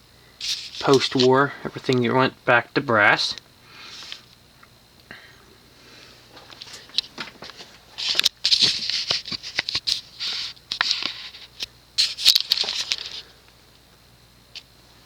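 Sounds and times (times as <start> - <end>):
faint steady hum: 0.0 - 15.0
rustling and scratching with clicks: 0.4 - 2.0, 6.4 - 13.3.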